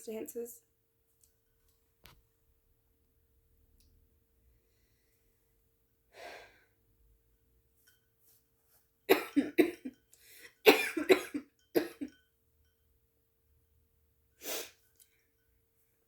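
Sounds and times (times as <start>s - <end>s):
faint breath: 4.5s - 5.4s, 6.1s - 6.8s, 10.1s - 10.6s
woman coughing: 9.1s - 10.0s, 10.6s - 12.2s.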